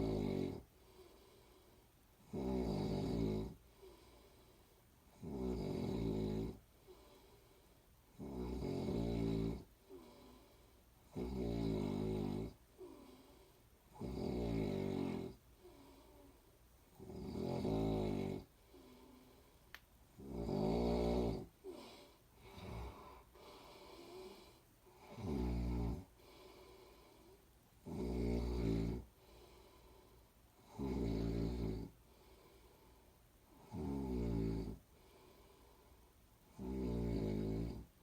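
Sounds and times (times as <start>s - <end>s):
person snoring: 0.0s - 1.5s, 2.2s - 4.4s, 5.1s - 7.3s, 8.1s - 16.3s, 16.9s - 19.6s, 20.2s - 32.8s, 33.5s - 35.7s, 36.5s - 37.9s.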